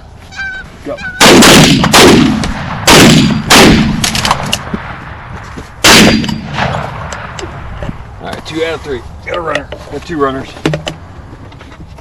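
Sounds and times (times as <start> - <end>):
shotgun blasts with rumbling echo: 1.2 - 7.7.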